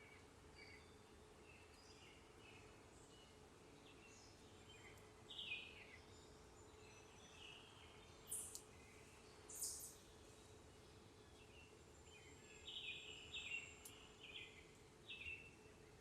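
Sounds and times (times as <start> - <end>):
bird chirps and calls: 9.5 - 10.0.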